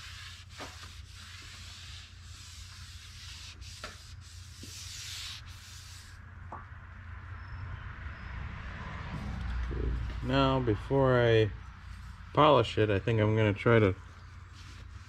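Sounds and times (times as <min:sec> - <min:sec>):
hand rubbing on metal: 0:00.0 - 0:06.2, 0:14.2 - 0:15.0.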